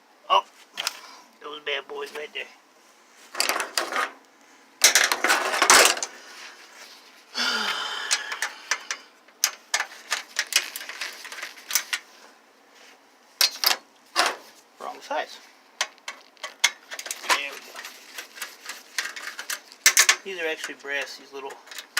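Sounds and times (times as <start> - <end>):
metal parts rattling: 3.3 - 4.2, 4.8 - 6.2, 8.1 - 12.0, 15.9 - 20.8.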